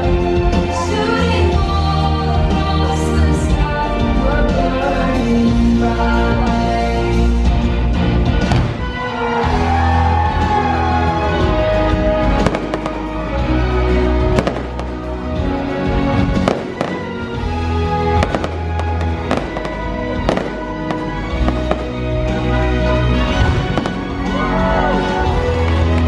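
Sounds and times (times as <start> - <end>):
loud soundtrack music: 0.0 - 26.0
fireworks bursting: 12.3 - 13.4, 14.3 - 15.6, 16.2 - 22.6, 23.3 - 24.4.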